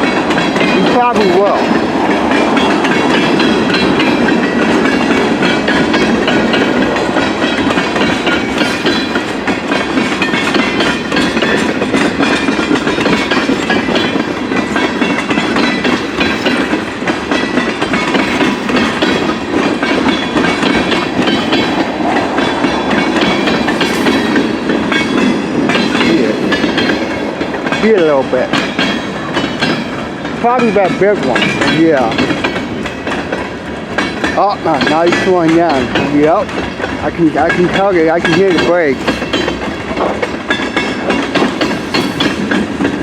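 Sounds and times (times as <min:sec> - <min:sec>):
freight train wheels rumbling: 0:00.0 - 0:43.0
train cars clicking and rattling: 0:00.0 - 0:43.0.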